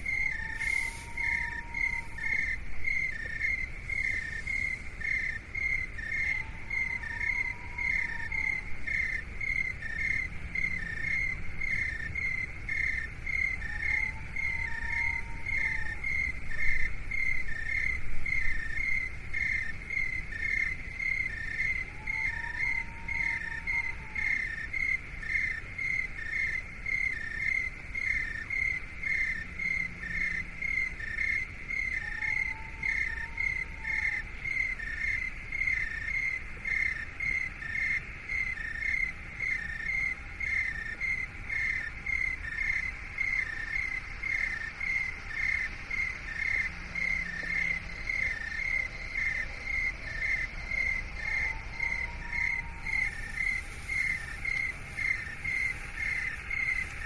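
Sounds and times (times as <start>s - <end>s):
faint whistle-like tone: 0.0s - 3.4s
insect-like chirping: 0.0s - 57.0s.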